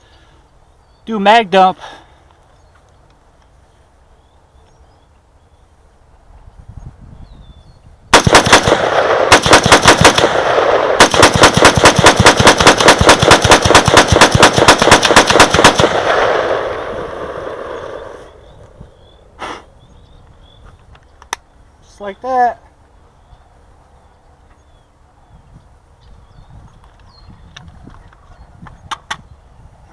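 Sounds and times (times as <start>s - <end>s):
rifle rapid fire: 8.1s - 18.3s
gunshot echo: 8.1s - 18.5s.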